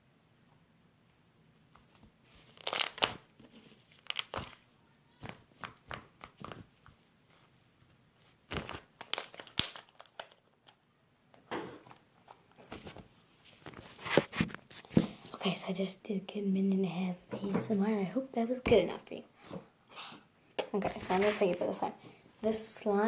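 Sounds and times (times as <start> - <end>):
slime crackling and popping: 2.4 - 4.6, 8.5 - 10.8.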